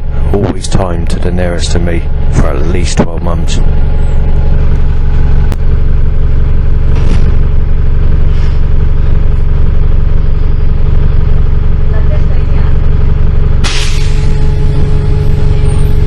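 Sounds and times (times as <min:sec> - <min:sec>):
vehicle engine drone: 0:00.0 - 0:16.0.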